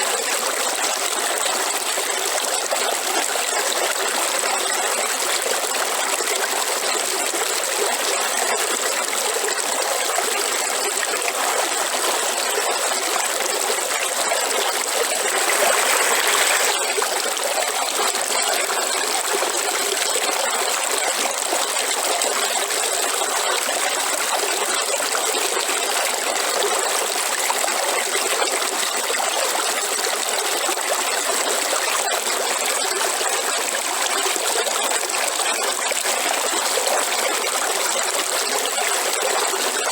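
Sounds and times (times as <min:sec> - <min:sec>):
river flowing: 0:12.6 - 0:20.0.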